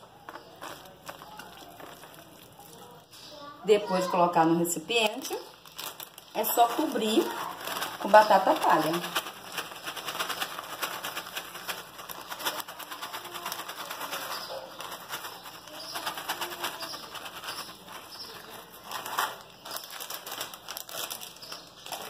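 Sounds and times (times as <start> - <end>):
crisp potato sticks pattering: 0.0 - 3.3, 5.0 - 22.0.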